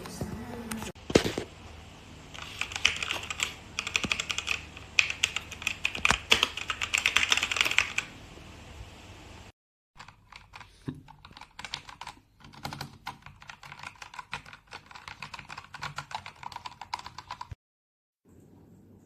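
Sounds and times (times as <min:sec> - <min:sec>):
rapid mechanical keyboard typing: 0:02.3 - 0:08.1, 0:10.0 - 0:17.6.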